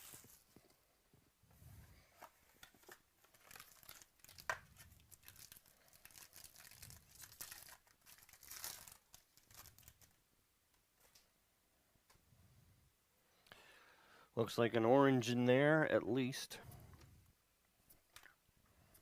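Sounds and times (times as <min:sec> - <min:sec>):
card pack wrapper tearing: 0:02.8 - 0:10.1.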